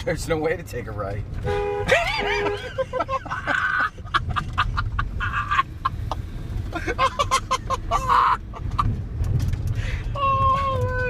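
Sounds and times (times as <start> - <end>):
car horn honks: 1.4 - 2.9
people laughing: 1.9 - 6.2, 6.8 - 8.9.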